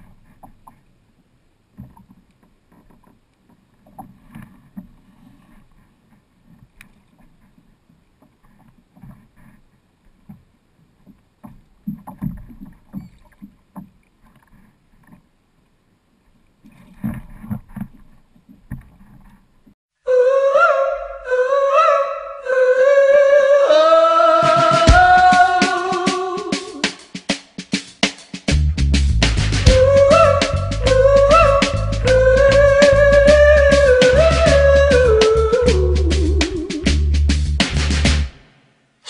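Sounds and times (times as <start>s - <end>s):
music: 24.4s - 38.7s.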